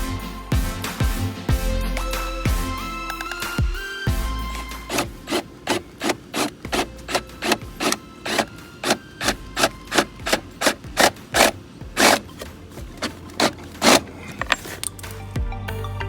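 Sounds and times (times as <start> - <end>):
hand tool rasping strokes: 4.5 - 14.9.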